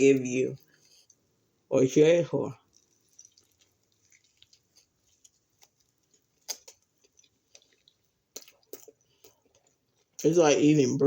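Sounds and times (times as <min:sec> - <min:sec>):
mouth clicks of chewing: 0:02.7 - 0:10.3.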